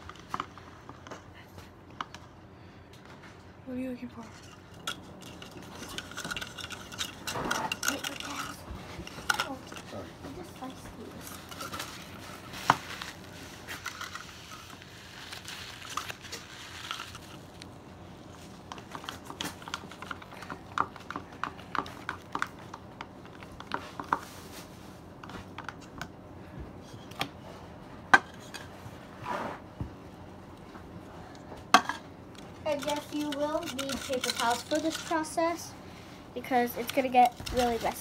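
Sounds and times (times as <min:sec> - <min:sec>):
slime crackly rustle: 0:07.1 - 0:20.5.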